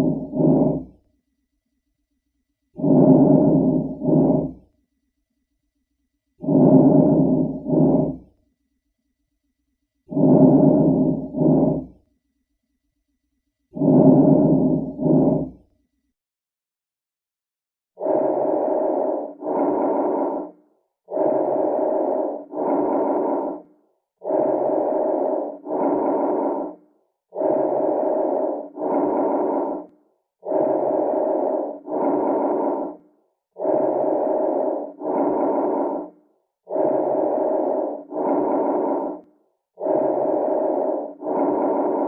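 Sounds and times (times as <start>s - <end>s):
lung breath sounds: 0.0s - 1.0s, 2.8s - 4.6s, 6.4s - 8.2s, 10.1s - 11.9s, 13.8s - 15.6s, 18.0s - 42.0s.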